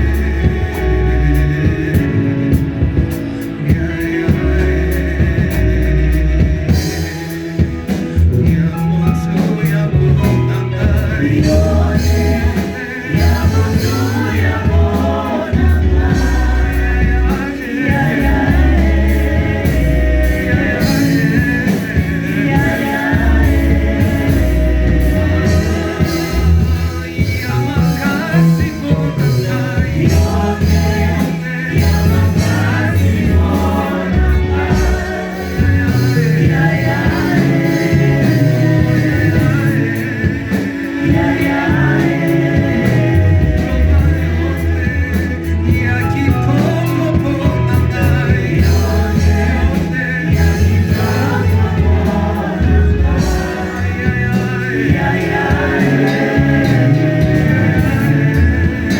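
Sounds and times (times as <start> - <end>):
bass line: 0.0 - 58.9
drum beat: 0.0 - 58.9
gospel singing: 0.0 - 58.9.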